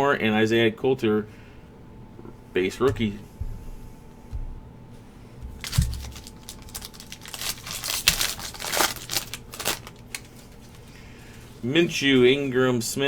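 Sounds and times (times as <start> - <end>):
soft handling thumps: 2.8 - 6.8
foil wrapper crinkling and tearing: 5.6 - 11.5.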